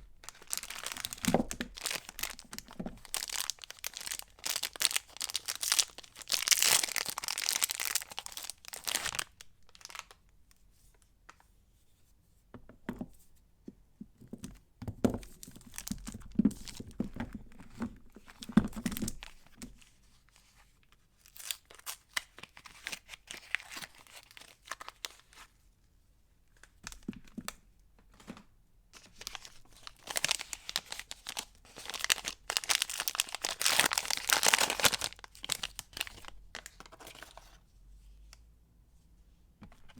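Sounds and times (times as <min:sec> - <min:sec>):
wrappers torn and crinkled: 0:00.2 - 0:10.2, 0:29.1 - 0:37.2.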